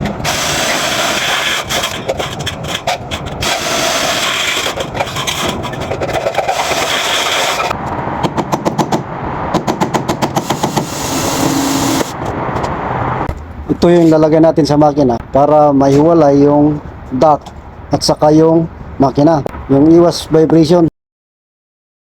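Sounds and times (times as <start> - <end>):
loud mechanical noise: 0.0 - 13.6.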